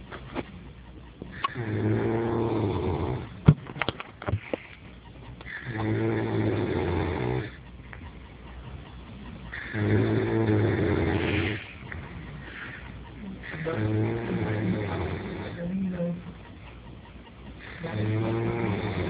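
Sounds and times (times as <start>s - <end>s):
man snoring: 9.7s - 11.6s, 17.9s - 19.0s.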